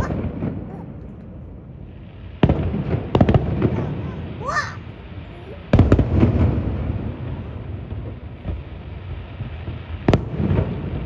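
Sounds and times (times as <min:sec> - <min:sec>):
fireworks booming and cracking: 0:00.0 - 0:11.0
rumble of fireworks: 0:00.0 - 0:11.0.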